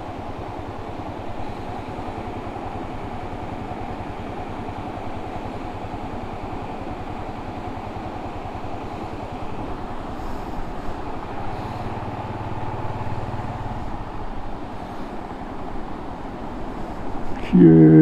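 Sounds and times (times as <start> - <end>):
motorcycle engine puttering: 1.7 - 15.7.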